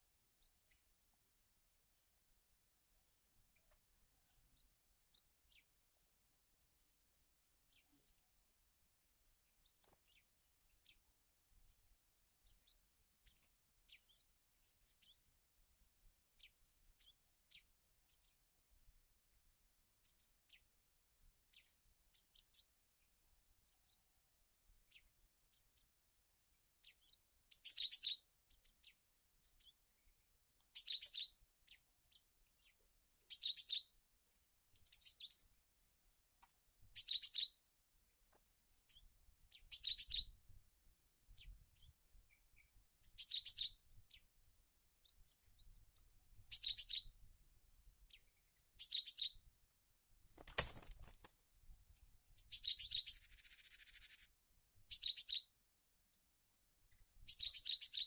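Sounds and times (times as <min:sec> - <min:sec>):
brief rustle: 0:50.3 - 0:51.4.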